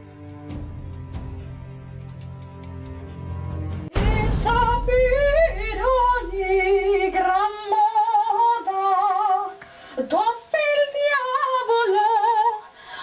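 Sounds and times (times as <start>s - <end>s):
instrumental music: 0.0s - 8.2s
low hum: 3.2s - 8.4s
woman singing with vibrato: 4.0s - 12.8s.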